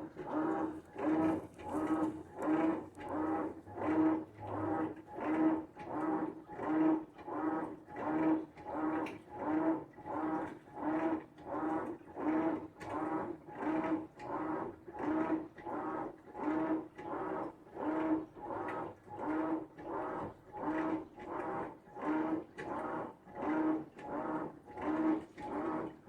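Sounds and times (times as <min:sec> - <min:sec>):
washing machine swishing: 0:00.0 - 0:04.8
motor hum: 0:00.0 - 0:06.4.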